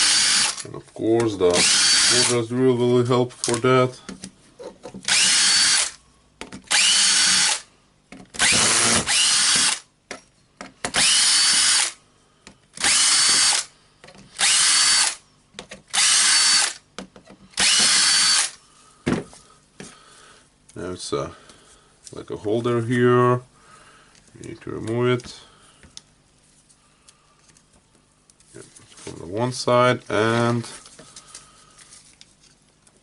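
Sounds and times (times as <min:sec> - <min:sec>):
cordless drill motor whining: 0:00.0 - 0:00.6, 0:01.5 - 0:02.3, 0:05.0 - 0:06.0, 0:06.7 - 0:07.7, 0:08.4 - 0:09.8, 0:10.9 - 0:12.0, 0:12.8 - 0:13.7, 0:14.4 - 0:15.2, 0:15.9 - 0:16.8, 0:17.6 - 0:18.6.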